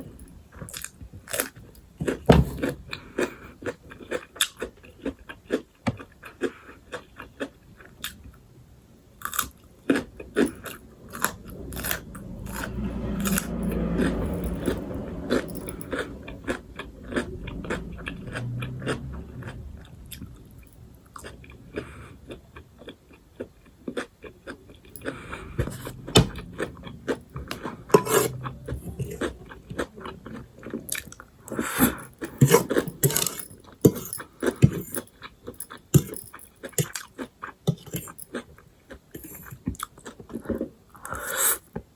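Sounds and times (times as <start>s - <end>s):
person chewing crunchy food: 0.0s - 8.4s, 9.2s - 41.6s
low rumble: 10.1s - 22.6s, 24.8s - 35.1s.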